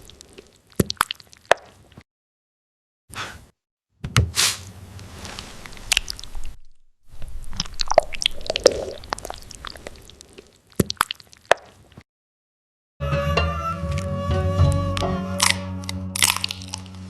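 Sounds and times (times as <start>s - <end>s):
crunchy bite and chewing: 15.4s - 17.0s.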